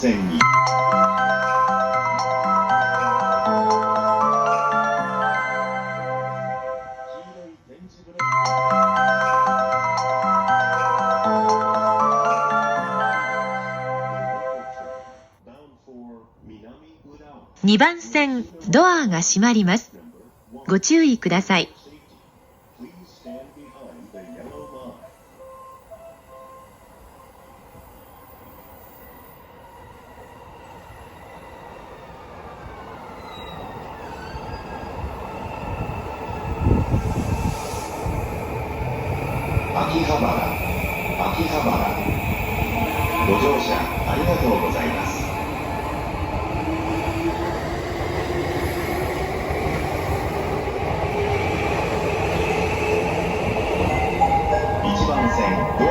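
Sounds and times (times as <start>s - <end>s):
electric train rumbling wheels: 21.8s - 55.9s.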